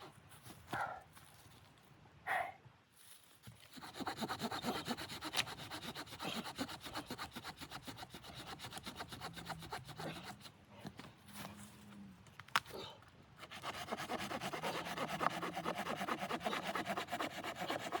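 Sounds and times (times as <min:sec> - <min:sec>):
hand saw rasping wood: 0:03.7 - 0:10.6, 0:13.4 - 0:18.0.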